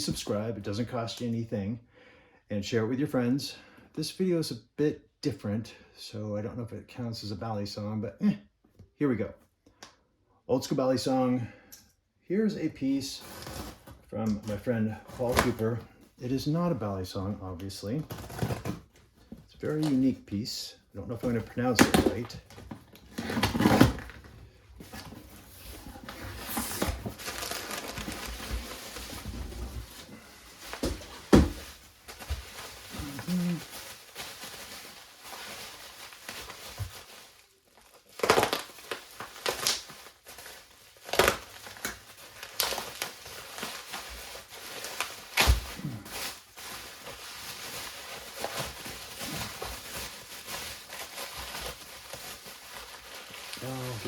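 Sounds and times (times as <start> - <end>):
wrapping crinkling and tearing: 17.7 - 20.2, 21.2 - 54.0.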